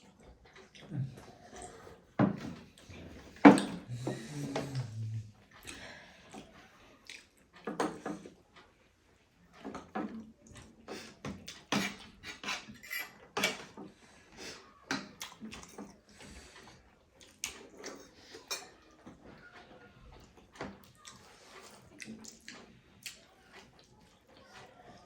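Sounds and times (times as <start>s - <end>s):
people chewing food: 0.0s - 25.0s
cutlery clinking on plates: 11.3s - 13.8s, 17.5s - 18.8s.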